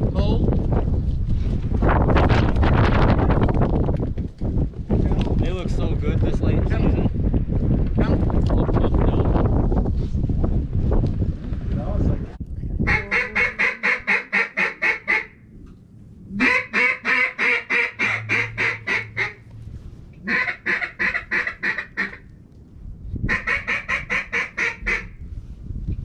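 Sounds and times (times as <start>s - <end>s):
duck call quacks: 12.9s - 15.3s, 16.4s - 19.4s, 20.2s - 22.2s, 23.3s - 25.1s.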